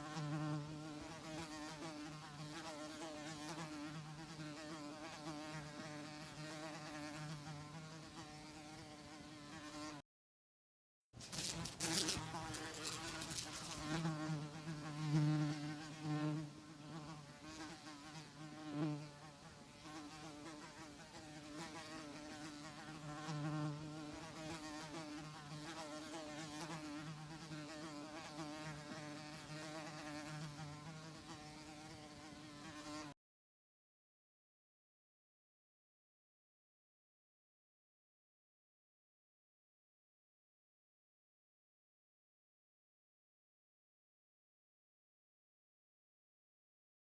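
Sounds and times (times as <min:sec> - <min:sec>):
housefly buzzing: 0:00.0 - 0:10.0, 0:11.2 - 0:33.2.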